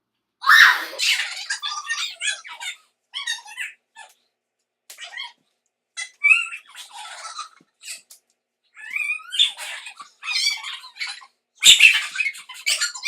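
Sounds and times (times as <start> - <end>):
girls squealing and shrieking: 0.4 - 1.4.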